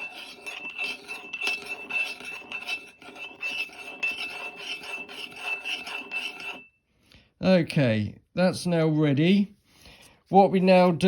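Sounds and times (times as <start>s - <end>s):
high ringing from a pot: 0.0s - 6.8s
utensil scraping round a pot: 0.0s - 6.8s.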